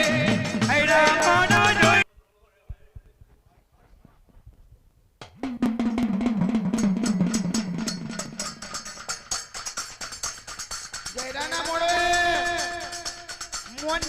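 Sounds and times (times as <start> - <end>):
fast hand drum roll: 5.2 - 14.0
bright metallic jingle: 7.0 - 14.0.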